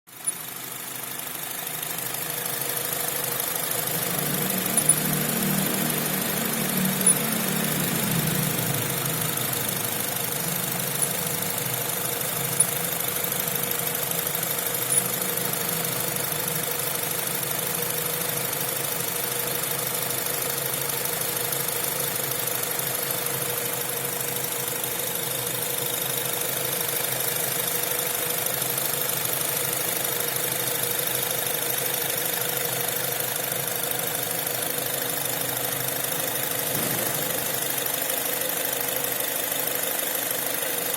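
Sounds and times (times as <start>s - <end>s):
car engine idling: 0.1s - 40.9s
sharp engine clicks: 4.0s - 13.5s, 14.4s - 15.9s.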